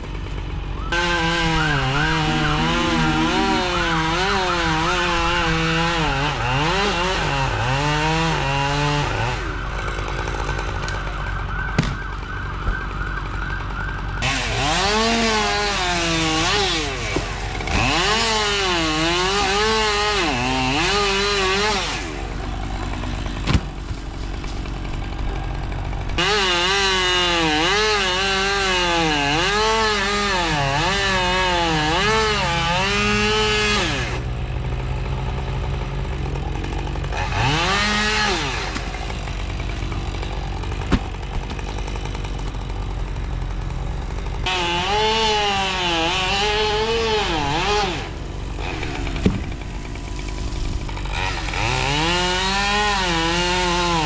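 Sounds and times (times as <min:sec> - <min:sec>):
chainsaw cutting wood: 0:00.0 - 0:11.2, 0:13.5 - 0:54.0
sharp knocks: 0:48.9 - 0:49.6.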